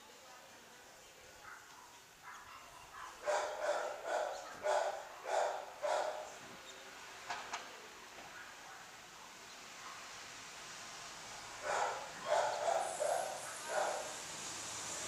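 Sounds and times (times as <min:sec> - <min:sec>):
dog barking: 0:02.2 - 0:06.3, 0:08.3 - 0:10.1, 0:11.6 - 0:14.2.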